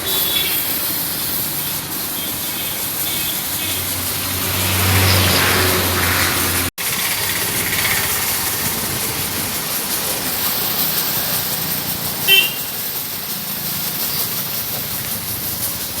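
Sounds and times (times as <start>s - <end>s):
vehicle horn beep: 0.0s - 0.7s, 12.3s - 12.8s
steady hissing noise: 0.0s - 16.0s.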